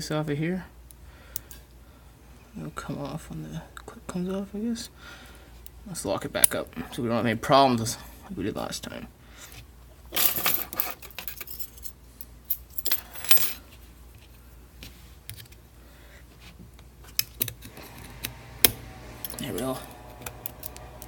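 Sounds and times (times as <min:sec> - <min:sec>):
keys jangling: 0:10.2 - 0:13.6.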